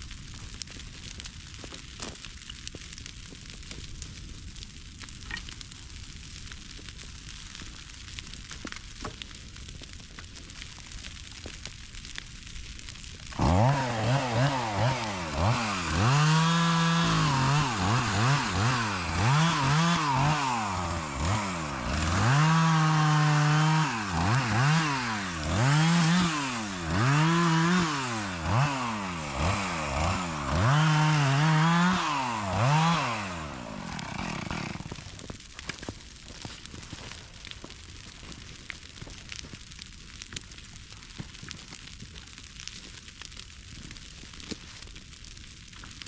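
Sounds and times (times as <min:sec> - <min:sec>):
chainsaw revving: 0:13.3 - 0:35.3.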